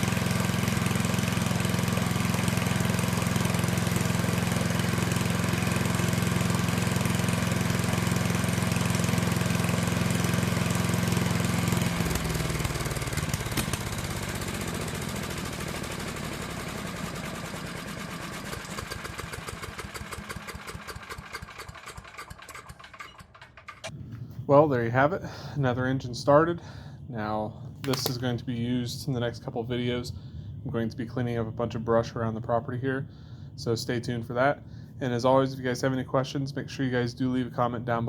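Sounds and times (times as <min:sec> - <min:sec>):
small gasoline engine running: 0:00.0 - 0:23.9.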